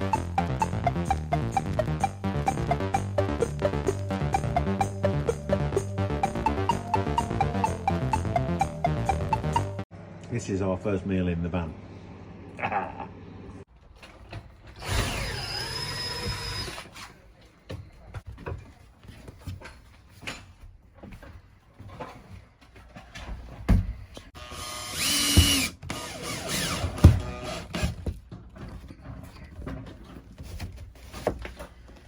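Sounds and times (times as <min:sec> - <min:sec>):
cordless drill whirring: 0:14.8 - 0:16.8, 0:24.4 - 0:27.9.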